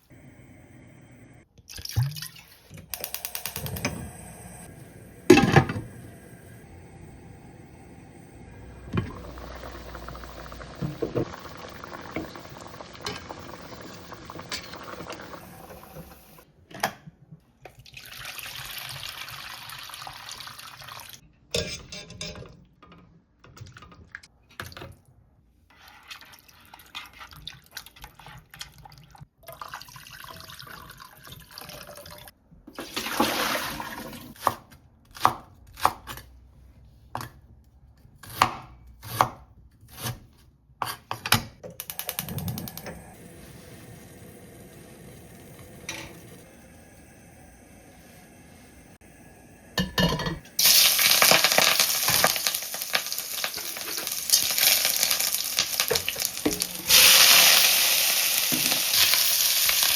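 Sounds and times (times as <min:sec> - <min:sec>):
water running at a sink: 0:08.8 - 0:16.4, 0:50.6 - 0:59.9.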